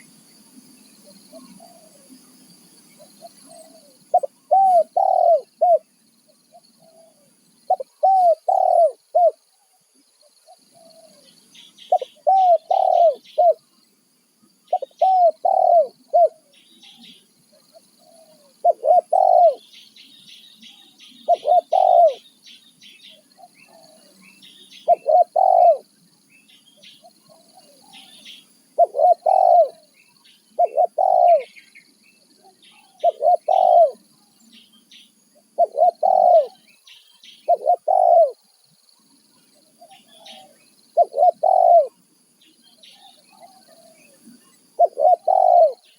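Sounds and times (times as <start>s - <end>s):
small birds chirping faintly: 0.0s - 45.9s
dove cooing: 1.1s - 2.2s, 2.9s - 5.9s, 6.5s - 9.5s, 10.4s - 13.7s, 14.7s - 19.7s, 21.1s - 22.3s, 23.1s - 26.0s, 27.0s - 31.6s, 32.7s - 34.0s, 35.4s - 36.8s, 37.5s - 38.5s, 39.8s - 42.0s, 43.0s - 45.9s.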